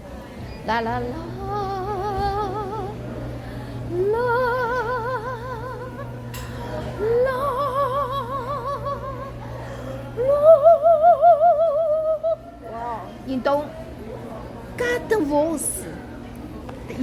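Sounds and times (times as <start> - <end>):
woman singing long held notes: 0.7 - 3.1, 3.8 - 6.2, 6.9 - 12.5.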